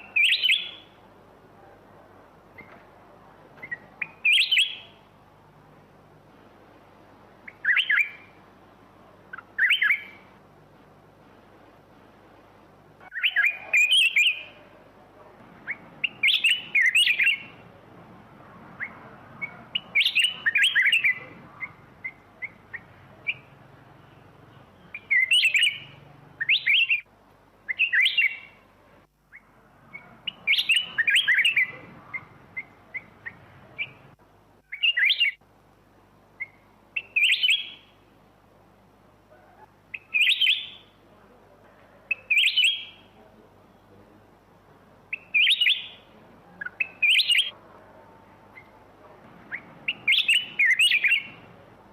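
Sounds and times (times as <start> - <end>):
bird chirps: 0.0 - 1.0, 2.5 - 2.8, 3.6 - 5.1, 7.4 - 8.4, 9.3 - 10.3, 13.0 - 14.8, 15.6 - 17.7, 18.8 - 27.1, 27.7 - 28.6, 29.3 - 35.4, 36.4 - 38.0, 39.3 - 41.0, 42.1 - 43.2, 45.1 - 47.6, 48.5 - 48.8, 49.4 - 51.6
bird singing warbled phrases: 0.0 - 1.0, 3.4 - 5.2, 7.4 - 8.4, 9.2 - 10.4, 13.0 - 17.9, 18.6 - 28.7, 29.3 - 35.4, 36.4 - 38.0, 39.3 - 41.0, 42.1 - 43.3, 45.1 - 51.9.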